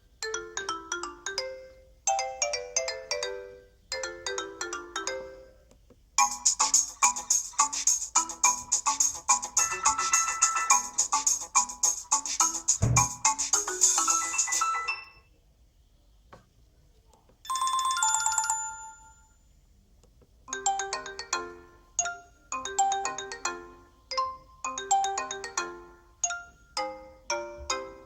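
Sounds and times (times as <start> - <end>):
bell-like ringtone melody: 0.2 - 5.5, 6.2 - 15.3, 17.5 - 19.4, 20.5 - 28.0
phone ringtones from speaker: 9.6 - 10.9.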